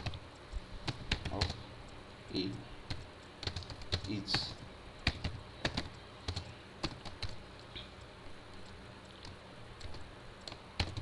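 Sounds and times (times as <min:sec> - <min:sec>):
keyboard keystrokes: 0:02.9 - 0:07.4, 0:09.2 - 0:11.0.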